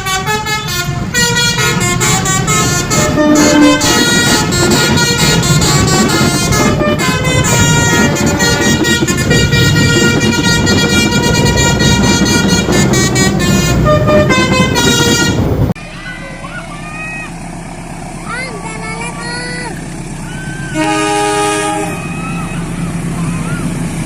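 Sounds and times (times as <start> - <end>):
musical horn playing a tune: 0.0 - 15.7, 20.8 - 22.0.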